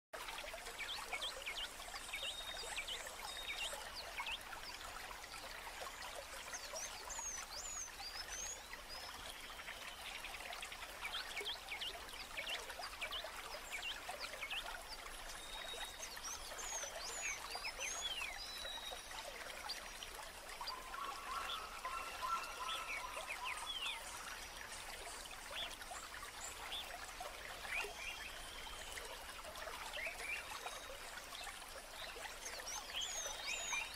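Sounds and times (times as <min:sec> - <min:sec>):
water trickling: 0:00.2 - 0:33.9
low steady bird call: 0:13.9 - 0:25.9.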